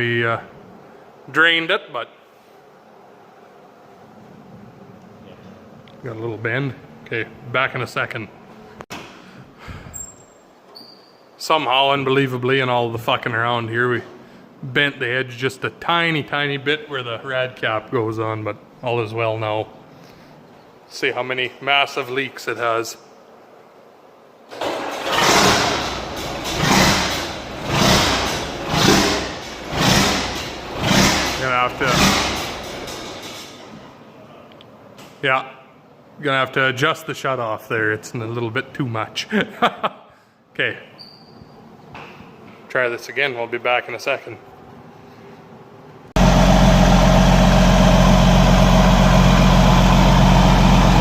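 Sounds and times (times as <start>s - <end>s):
diesel engine running unsteadily: 25.1s - 33.2s, 46.2s - 51.0s
diesel tractor engine idling: 46.2s - 51.0s.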